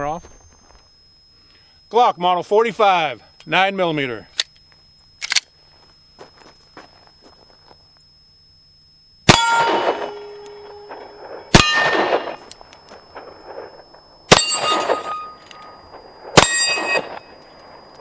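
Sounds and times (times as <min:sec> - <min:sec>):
steel plate ringing clang: 0:09.3 - 0:12.4, 0:14.3 - 0:15.7, 0:16.4 - 0:17.2
pistol shots: 0:09.3 - 0:12.6, 0:14.3 - 0:15.4, 0:16.3 - 0:17.3.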